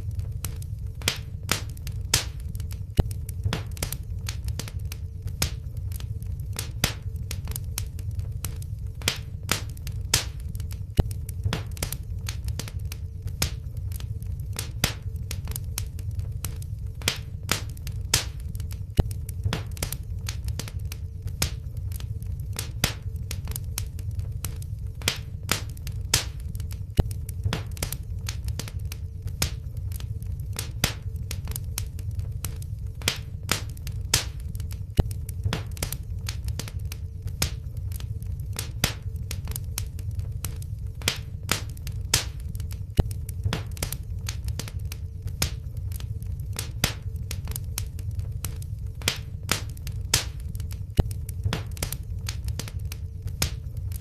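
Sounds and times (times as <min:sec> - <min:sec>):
low rumble of flames: 0:00.0 - 0:54.0
wood fire crackling: 0:00.0 - 0:54.0.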